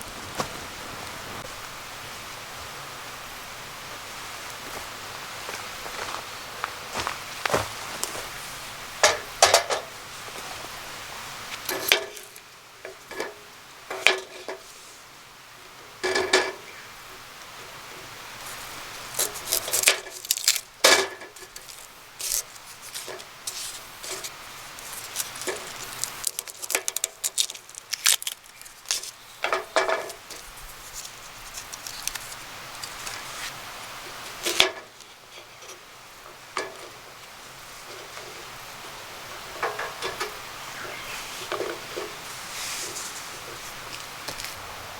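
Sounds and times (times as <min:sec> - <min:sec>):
cookware and utensils clinking: 0:11.7 - 0:14.6, 0:16.0 - 0:16.8.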